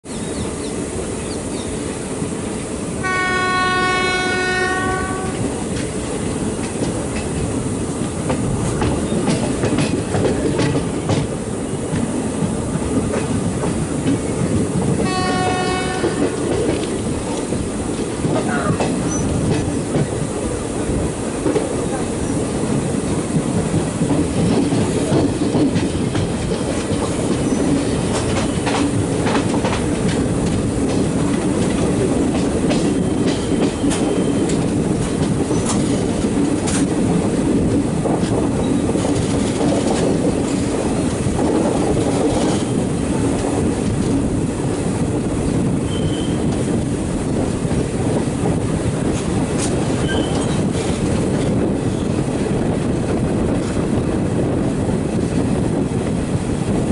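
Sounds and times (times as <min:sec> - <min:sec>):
train wheels rumbling and clattering: 0:00.0 - 0:56.9
faint wheel squeals: 0:45.9 - 0:46.4, 0:50.0 - 0:50.5.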